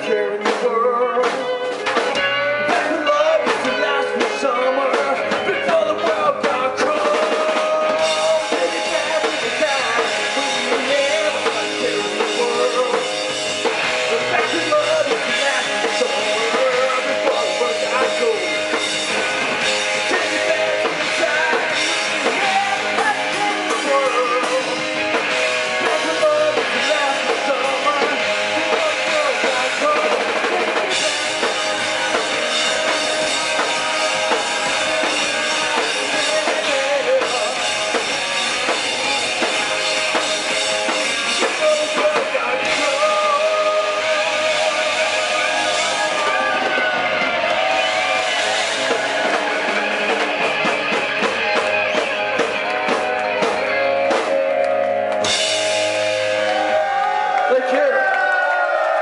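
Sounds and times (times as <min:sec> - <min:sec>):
drum kit beat: 0:00.0 - 0:59.0
rock band playing: 0:00.0 - 0:59.0.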